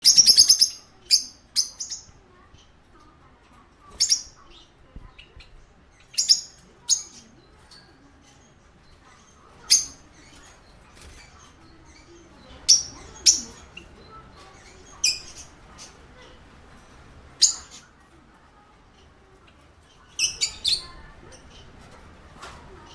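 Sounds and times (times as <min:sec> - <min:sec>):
parakeet chirping: 0:00.0 - 0:02.6, 0:03.9 - 0:07.4, 0:08.3 - 0:16.4, 0:17.3 - 0:17.9, 0:20.0 - 0:22.0.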